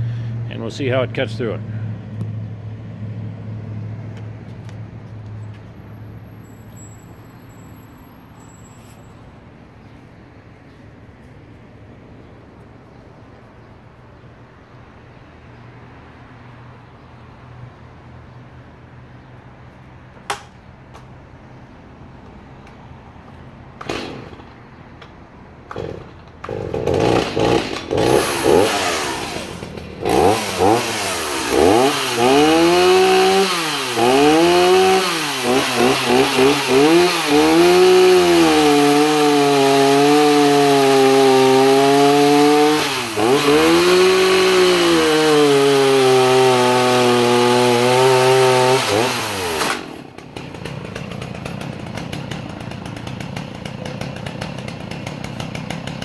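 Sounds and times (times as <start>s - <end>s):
chainsaw revving and cutting wood: 23.8s - 24.6s, 25.6s - 56.0s.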